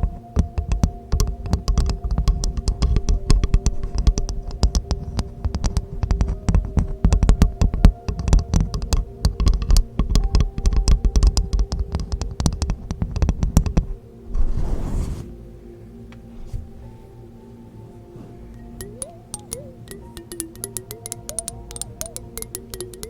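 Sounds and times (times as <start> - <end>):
rapid tapping and clicking: 0.0 - 14.0, 18.8 - 23.0
faint low tones: 0.0 - 23.0
soft rush: 14.3 - 17.2.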